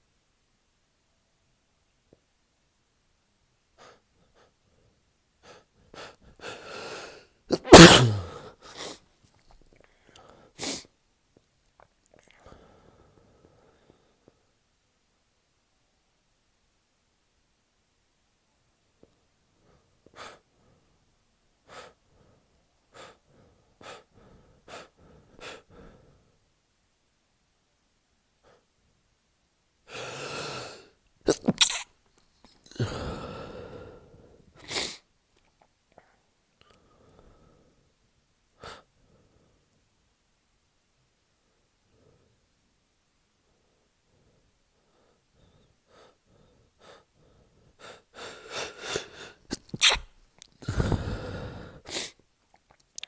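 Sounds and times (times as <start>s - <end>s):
man gasping: 6.5s - 8.5s, 50.6s - 52.0s
man sneezing loudly: 7.5s - 8.5s, 49.5s - 50.1s
man gasping in-breaths: 50.6s - 52.0s.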